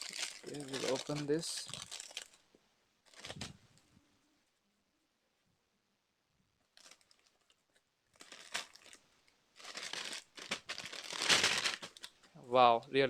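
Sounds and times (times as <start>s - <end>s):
packaging crinkling: 0.0s - 2.4s, 3.0s - 3.6s, 6.7s - 12.3s.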